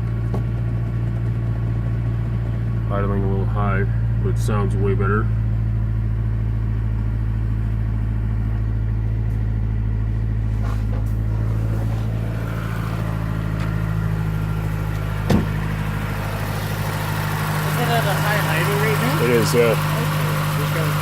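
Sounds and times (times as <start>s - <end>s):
car engine idling: 0.0s - 21.0s
short thump: 0.2s - 0.6s, 10.6s - 12.1s, 14.9s - 15.7s.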